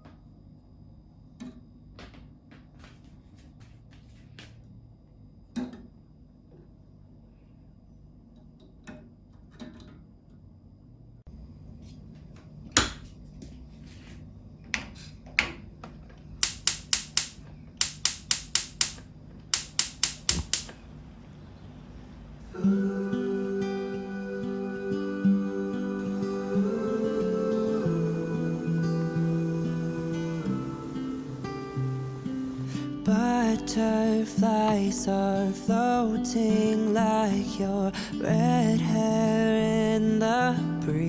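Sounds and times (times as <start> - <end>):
kitchen clicks and knocks: 16.4 - 19.0, 19.6 - 20.8
sharp taps: 16.4 - 19.0, 19.6 - 20.8
acoustic guitar music: 22.6 - 41.0.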